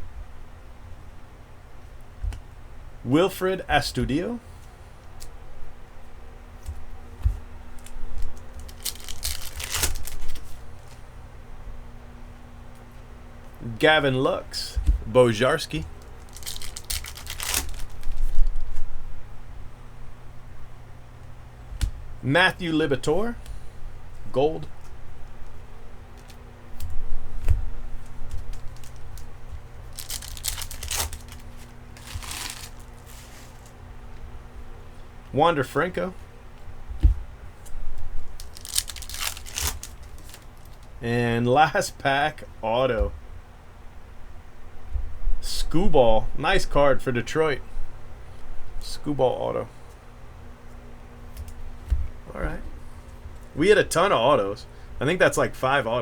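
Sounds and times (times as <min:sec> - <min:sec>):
cards being handled: 0:06.6 - 0:11.0, 0:15.8 - 0:18.8, 0:26.1 - 0:33.8, 0:37.0 - 0:41.0
foil wrapper tearing and crinkling: 0:07.8 - 0:10.9, 0:16.0 - 0:18.7, 0:28.3 - 0:33.8, 0:38.3 - 0:40.9.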